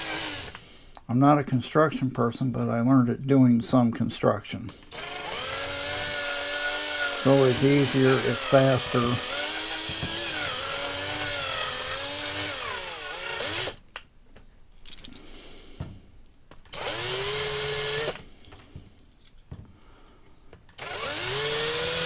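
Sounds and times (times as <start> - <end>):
power drill whine: 0.0 - 0.6, 4.9 - 13.8, 16.7 - 18.2, 20.8 - 22.0.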